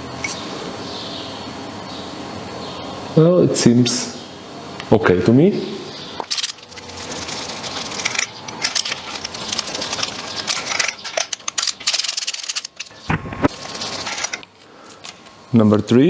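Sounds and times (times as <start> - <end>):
ratchet clicking and rattling: 6.2 - 15.3.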